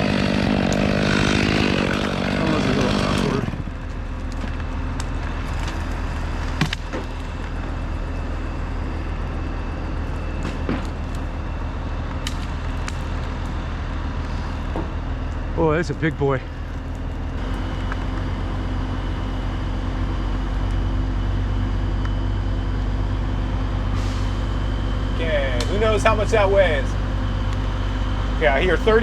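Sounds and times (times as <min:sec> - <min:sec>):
chainsaw cutting at full throttle: 0:00.0 - 0:03.7
low engine rumble: 0:00.0 - 0:29.0.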